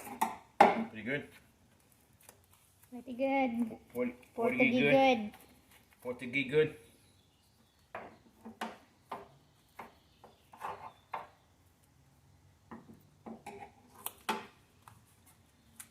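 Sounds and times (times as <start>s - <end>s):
objects being handled: 7.9s - 12.0s.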